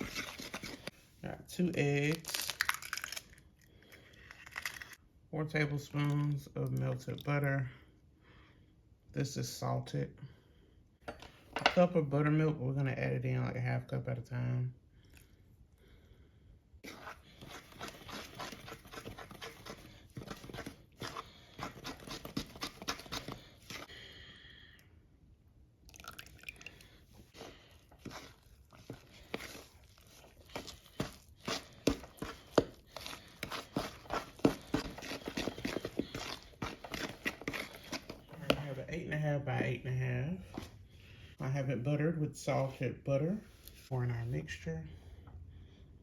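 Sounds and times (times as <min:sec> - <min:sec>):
batter stirred in mixing bowl: 0:00.0 - 0:02.2, 0:04.8 - 0:07.7, 0:16.8 - 0:23.9, 0:26.0 - 0:40.8.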